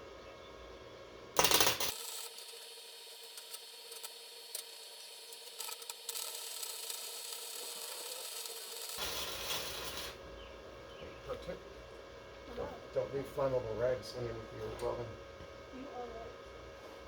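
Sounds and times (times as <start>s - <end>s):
welder arc crackling hiss: 1.4s - 10.3s.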